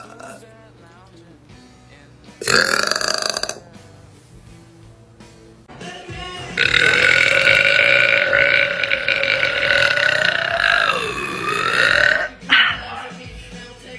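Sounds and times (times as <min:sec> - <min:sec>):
woman burping: 0:00.0 - 0:00.4, 0:02.4 - 0:03.6, 0:06.6 - 0:12.9.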